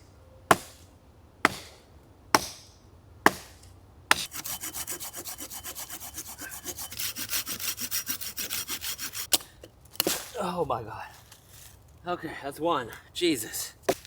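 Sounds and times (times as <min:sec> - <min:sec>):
hand saw cutting branch: 0:04.1 - 0:10.3.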